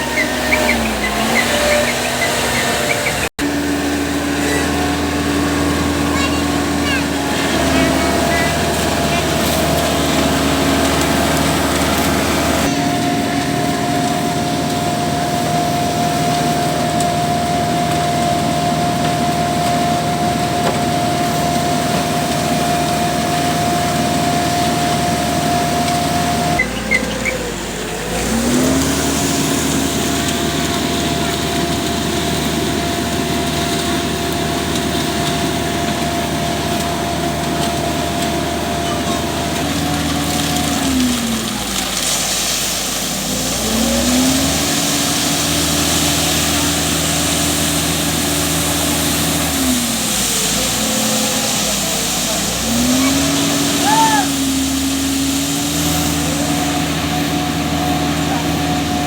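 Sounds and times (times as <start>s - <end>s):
diesel engine running: 0.0s - 59.0s.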